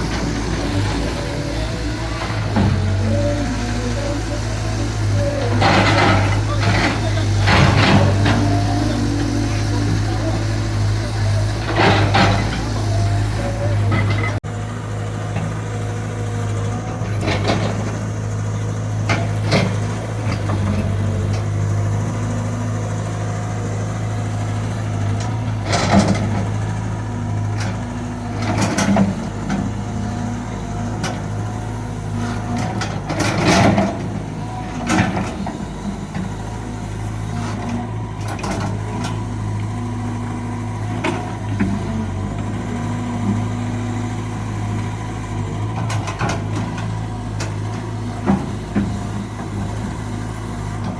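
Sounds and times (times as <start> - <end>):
excavator diesel engine running: 0.0 - 50.9.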